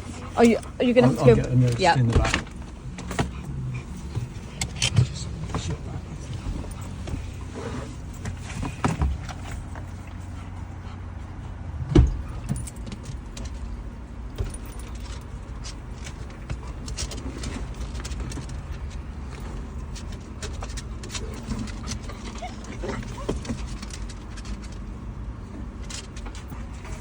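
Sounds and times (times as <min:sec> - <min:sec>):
metallic jangling and rummaging: 0:00.0 - 0:10.4, 0:12.0 - 0:27.0
car engine idling: 0:00.0 - 0:27.0
loud thump: 0:11.8 - 0:12.3.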